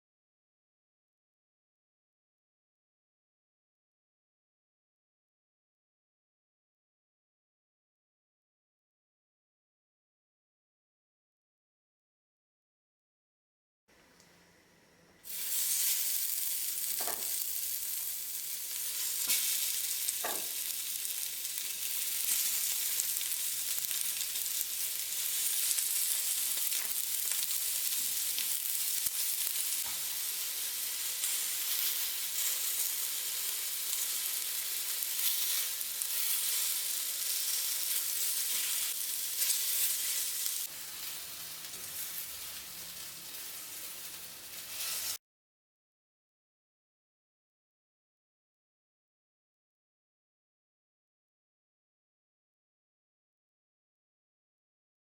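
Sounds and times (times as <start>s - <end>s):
food sizzling in a pan: 15.2s - 45.2s.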